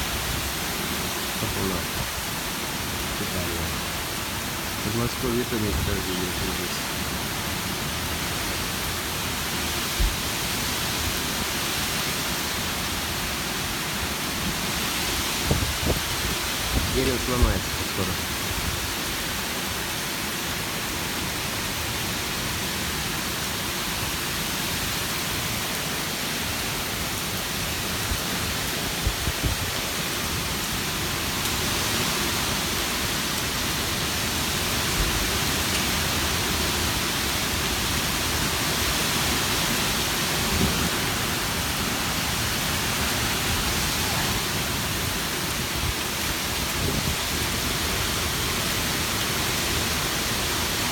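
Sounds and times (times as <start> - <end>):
heavy rain pouring: 0.0 - 50.9
wind gusts on microphone: 9.8 - 12.0, 14.4 - 19.0, 28.0 - 30.0, 38.8 - 48.2.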